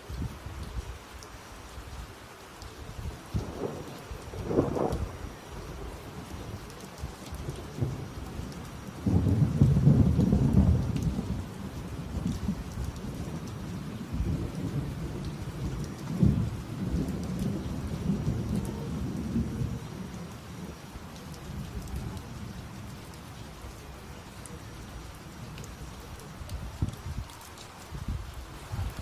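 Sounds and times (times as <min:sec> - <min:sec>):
steady rain: 0:00.0 - 0:29.0
thunder rumbling: 0:03.0 - 0:29.0.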